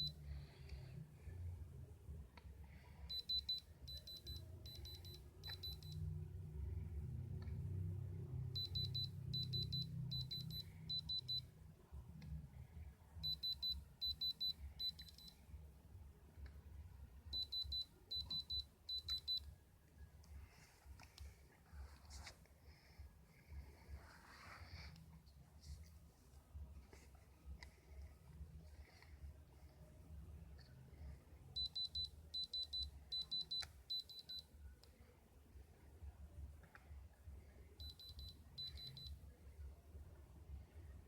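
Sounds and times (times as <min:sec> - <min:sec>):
electronic alarm beeping: 0:03.1 - 0:06.1, 0:08.4 - 0:11.5, 0:13.2 - 0:15.4, 0:17.3 - 0:19.5, 0:31.6 - 0:34.5, 0:37.8 - 0:39.2.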